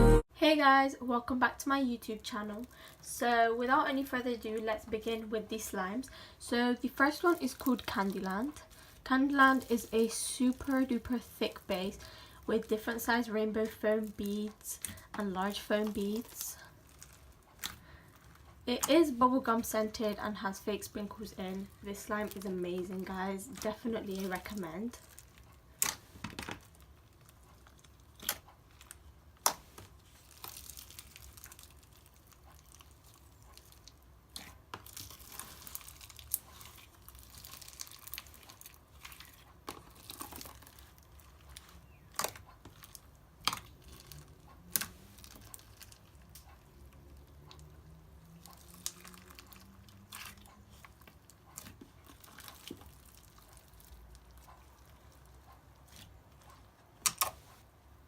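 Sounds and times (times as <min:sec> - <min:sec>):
slime squished by hand crackling: 0:13.6 - 0:19.0, 0:21.3 - 0:46.6, 0:48.3 - 0:57.4
sharp pops and clicks: 0:57.0 - 0:57.4.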